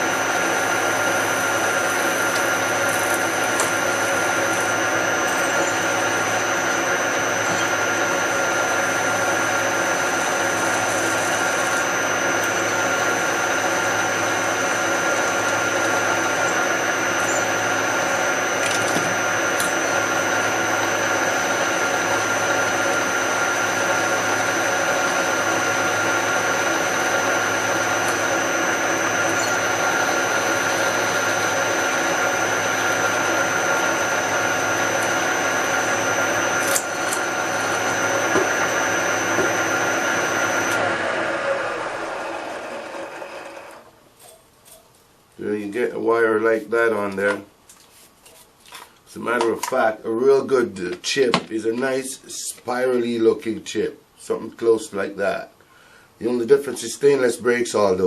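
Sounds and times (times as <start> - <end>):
machine motor hum and whine: 0.0 - 44.0.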